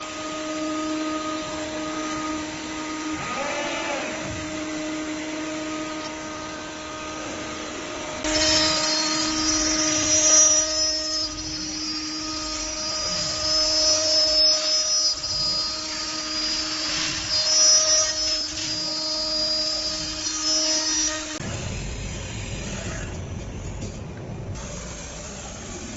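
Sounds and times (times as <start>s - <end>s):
router spindle whine: 0.0s - 23.9s
high hissing cutting noise: 8.2s - 22.8s.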